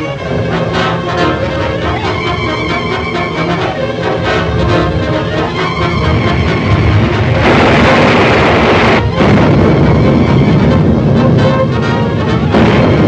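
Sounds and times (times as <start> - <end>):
dramatic orchestral music: 0.0 - 13.0
rushing rumble of eruption: 0.0 - 13.0.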